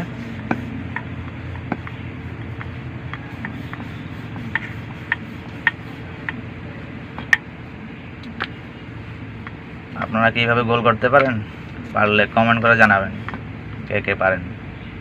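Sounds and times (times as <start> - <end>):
low background hum: 0.0 - 15.0
rolling pin clicking on board: 4.4 - 6.4.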